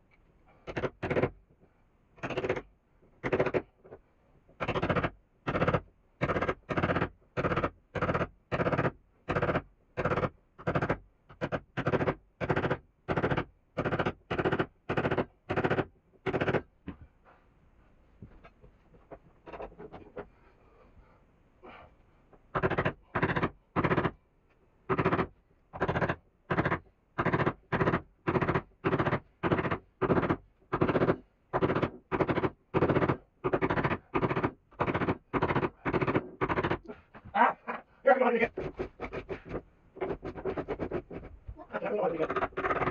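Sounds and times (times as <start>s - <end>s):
hand saw rasping through wood: 38.4s - 42.9s.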